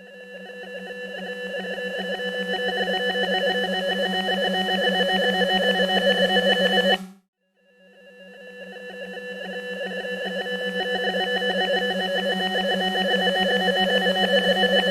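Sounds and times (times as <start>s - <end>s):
buzzy synthesized drone: 8.6s - 14.9s.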